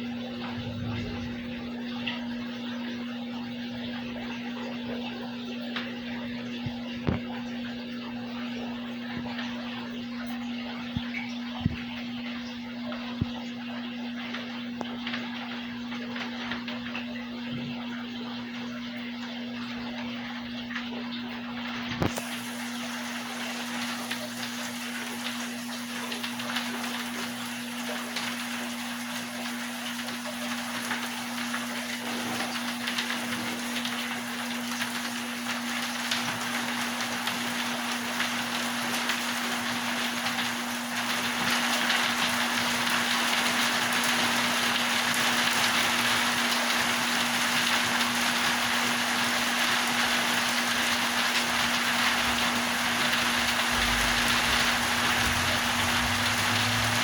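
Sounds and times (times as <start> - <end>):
low hum: 0.0 - 4.0, 53.3 - 57.0
rain-like water noise: 0.0 - 57.0.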